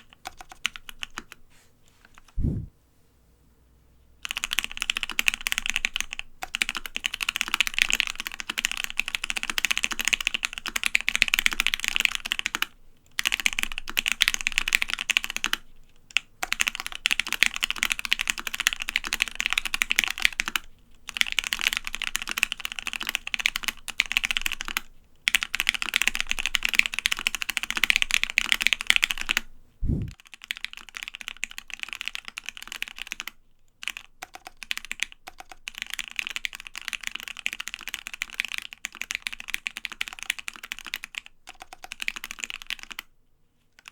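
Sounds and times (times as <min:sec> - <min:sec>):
low thump: 0:02.4 - 0:02.7, 0:29.8 - 0:30.2.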